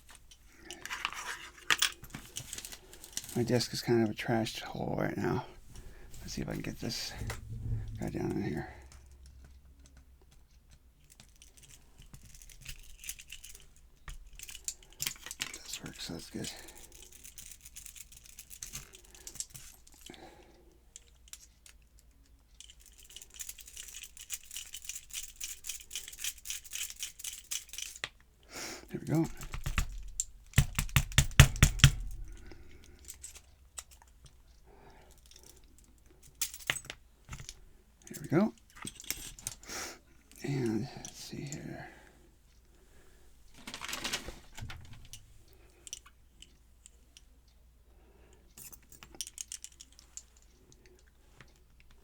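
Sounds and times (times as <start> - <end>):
sharp clicks and knocks: 6.2 - 10.1, 29.4 - 32.7.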